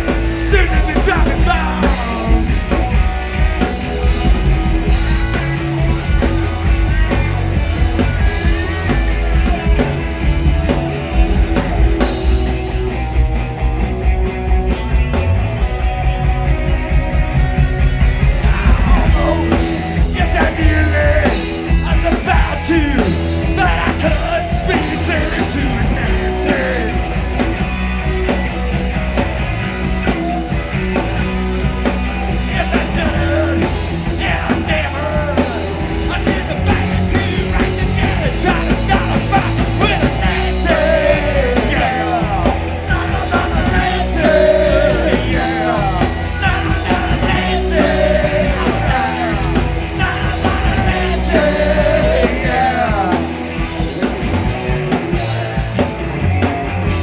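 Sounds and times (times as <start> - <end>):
singer yelling vocals: 0.0 - 3.0, 18.2 - 27.4, 32.2 - 53.8
rock band playing punk: 0.0 - 57.0.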